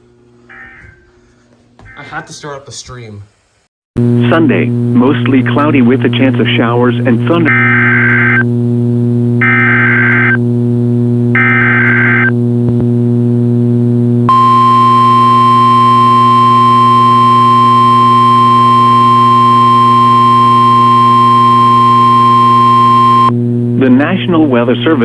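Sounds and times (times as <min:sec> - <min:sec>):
steady warning alarm tone: 0:00.5 - 0:02.3, 0:05.0 - 0:08.4, 0:14.3 - 0:23.4
steady hum: 0:04.0 - 0:25.0
warbling data tones: 0:09.4 - 0:10.4, 0:11.4 - 0:12.3, 0:14.3 - 0:23.3.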